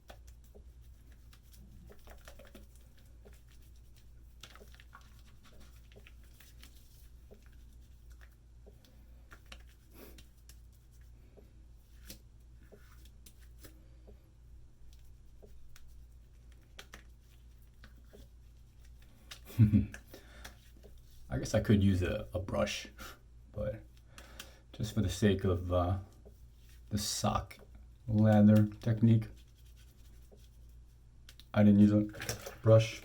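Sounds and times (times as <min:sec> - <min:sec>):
lather rubbed on stubble: 0:00.0 - 0:08.5, 0:09.2 - 0:11.2, 0:14.8 - 0:19.4, 0:28.2 - 0:31.0.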